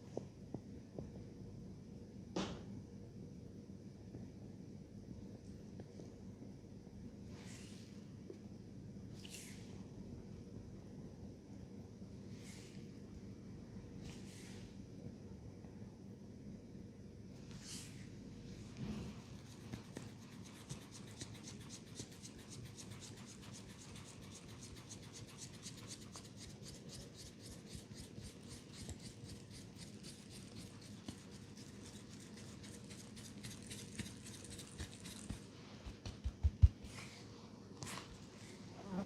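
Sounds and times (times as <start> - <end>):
hands scratching hair and scalp: 19.4 - 37.2.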